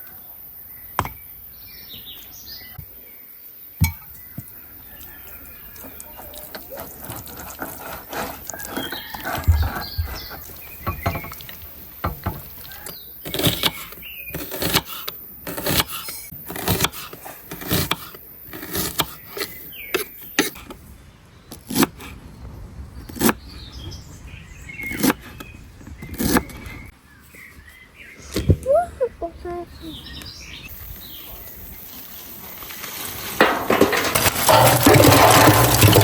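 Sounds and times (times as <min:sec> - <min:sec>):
birds chirping faintly: 0:00.0 - 0:36.0
sharp knocks and clicks: 0:01.0 - 0:01.2, 0:08.9 - 0:12.6.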